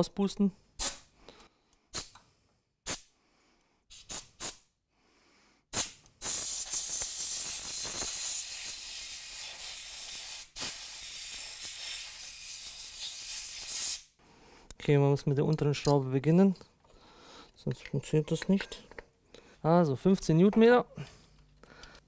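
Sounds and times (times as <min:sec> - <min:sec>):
air blow gun hissing: 0:05.8 - 0:14.1.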